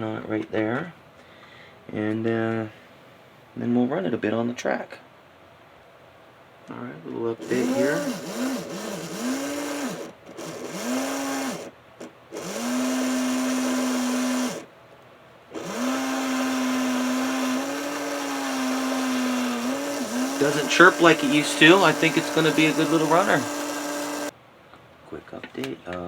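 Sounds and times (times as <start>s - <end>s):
model locomotive motor whining: 7.4s - 11.7s, 12.4s - 14.7s, 15.6s - 24.3s.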